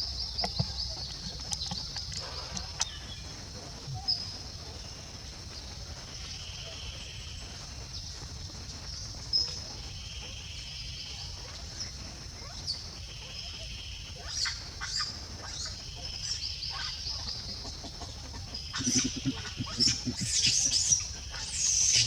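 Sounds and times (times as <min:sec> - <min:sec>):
high animal chirps: 0:18.7 - 0:22.0.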